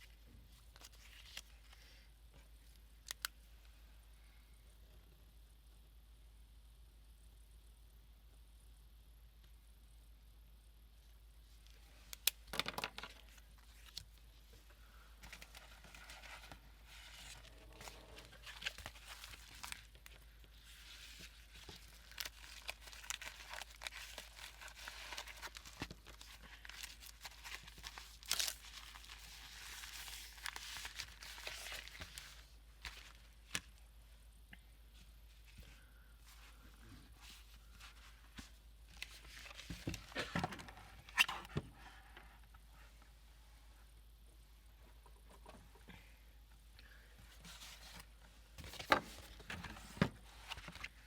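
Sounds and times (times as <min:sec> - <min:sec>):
paper rustling and crinkling: 0:00.7 - 0:01.8, 0:15.2 - 0:33.7, 0:37.2 - 0:41.3, 0:47.3 - 0:51.0.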